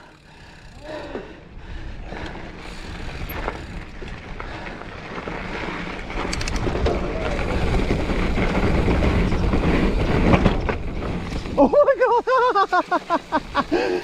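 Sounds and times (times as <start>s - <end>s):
bike rattling: 0.0s - 14.0s
wind noise on microphone: 1.6s - 4.6s, 6.0s - 11.6s
bike tyres rolling over rocks: 2.0s - 14.0s.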